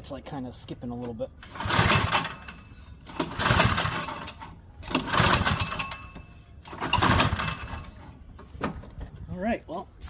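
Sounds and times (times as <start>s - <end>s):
recoil starter cranking engine: 1.1s - 8.0s.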